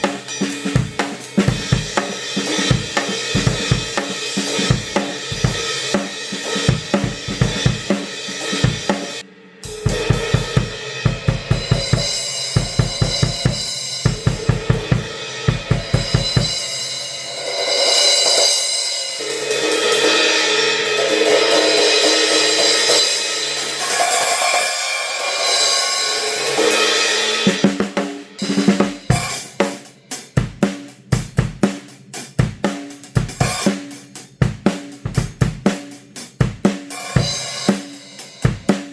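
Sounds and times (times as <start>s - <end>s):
drum kit beat: 0.0s - 38.9s
ringing cymbal wash: 7.6s - 27.6s.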